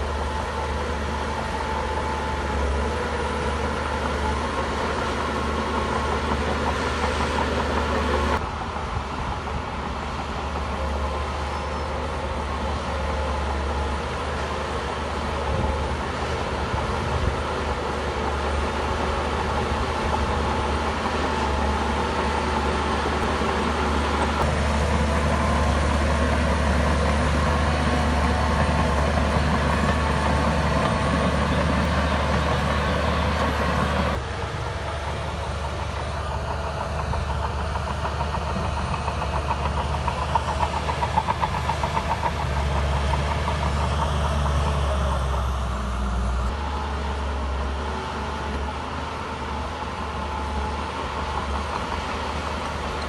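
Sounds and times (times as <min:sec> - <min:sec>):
diesel engine running: 0:00.0 - 0:53.0
metallic clanking of tracks: 0:19.2 - 0:45.8.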